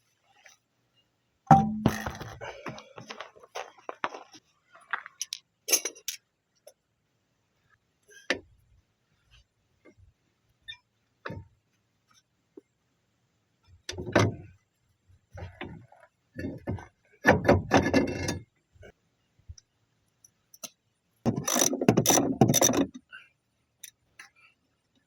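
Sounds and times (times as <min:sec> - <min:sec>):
metal clinks and knocks: 0:01.5 - 0:03.0.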